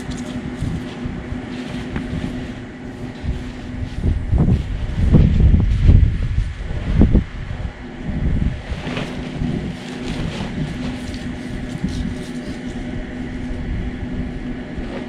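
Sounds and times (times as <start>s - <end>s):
rustling: 0.0s - 6.5s, 8.6s - 13.6s
wind on microphone: 0.0s - 15.0s.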